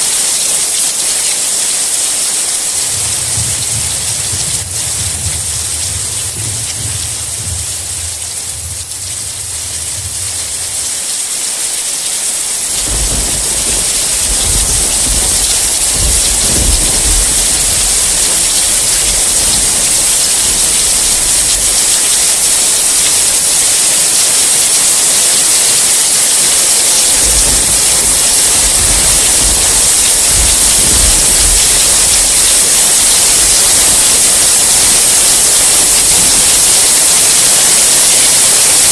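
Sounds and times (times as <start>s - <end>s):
steady rain hissing: 0.0s - 38.9s
rolling thunder: 2.7s - 11.3s, 12.3s - 38.9s.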